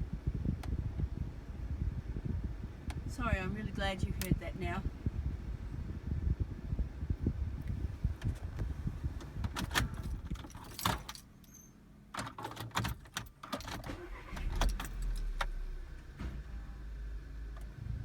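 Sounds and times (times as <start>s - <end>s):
car engine starting: 0.0s - 18.0s
keys jangling and clicking: 9.6s - 13.9s.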